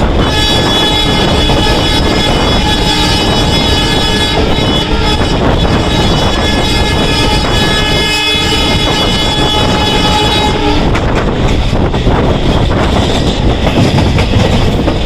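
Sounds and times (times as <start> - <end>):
running train rumble: 0.0 - 15.0
locomotive horn blasts: 0.2 - 11.0.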